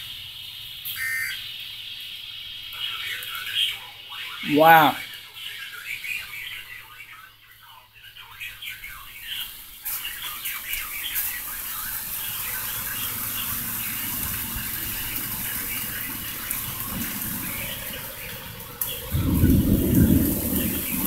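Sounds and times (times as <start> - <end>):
heavy rain and wind rushing: 10.2 - 21.0.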